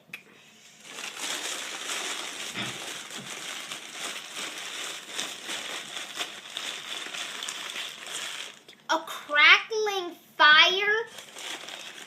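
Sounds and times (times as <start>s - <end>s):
newspaper being crumpled: 0.8s - 8.7s, 11.0s - 12.0s.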